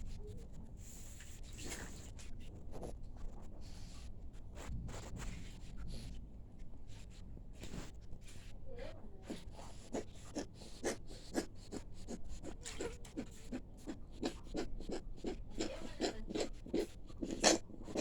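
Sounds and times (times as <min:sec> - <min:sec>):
pet snoring snuffly breaths: 0:09.2 - 0:18.0.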